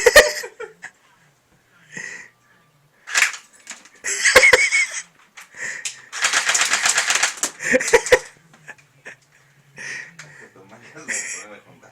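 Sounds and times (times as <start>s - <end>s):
airsoft gun firing bursts: 3.1s - 3.4s, 6.2s - 7.6s
sharp gun clicks: 3.1s - 3.9s, 5.8s - 7.6s.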